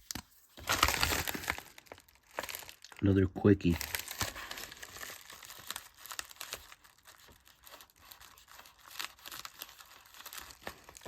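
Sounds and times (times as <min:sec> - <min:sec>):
packaging crinkling and tearing: 0:00.0 - 0:11.0.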